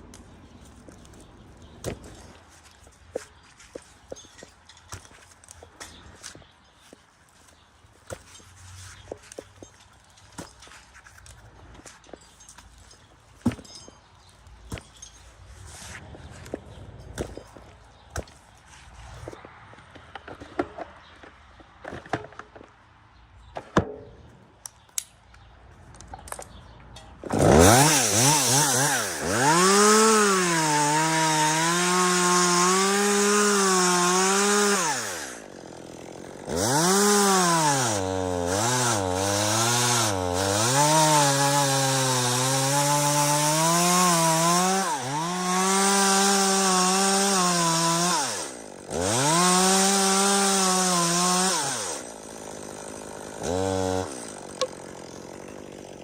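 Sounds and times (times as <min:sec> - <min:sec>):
chainsaw cutting wood: 0:27.2 - 0:56.0.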